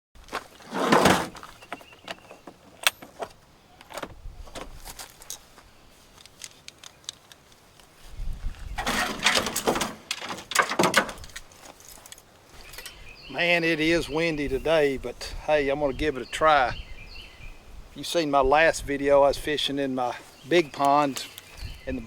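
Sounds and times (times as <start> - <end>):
wind gusting over microphone: 4.0 - 4.9, 8.0 - 9.6, 12.9 - 19.8, 21.5 - 22.0
loud rustling: 8.8 - 12.8
clicks and rattles: 8.8 - 13.0.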